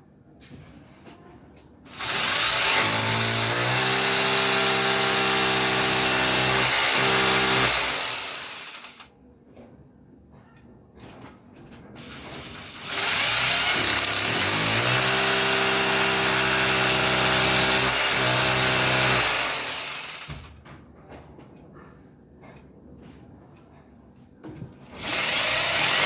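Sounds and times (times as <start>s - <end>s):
electric drill whining: 2.0s - 9.0s, 12.0s - 20.5s, 25.0s - 26.0s.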